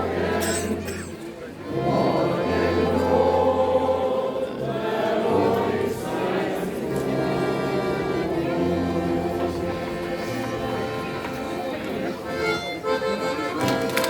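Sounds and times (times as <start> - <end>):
group of voices singing: 0.0 - 0.9, 1.6 - 10.4.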